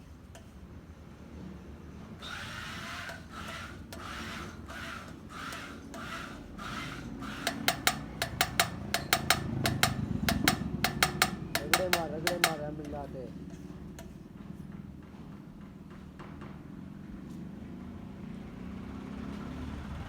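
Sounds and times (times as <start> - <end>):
rasping hand tool strokes: 2.2 - 13.0
sharp ringing clicks: 7.3 - 13.0.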